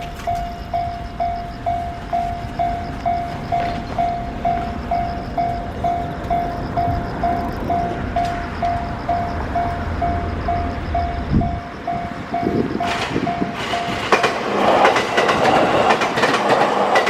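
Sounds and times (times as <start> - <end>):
low rumble: 0.0 - 13.4
railroad crossing bell ringing: 0.0 - 17.0.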